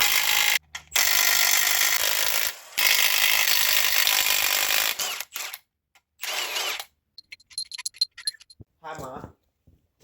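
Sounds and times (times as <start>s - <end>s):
cordless drill running: 6.2s - 6.8s.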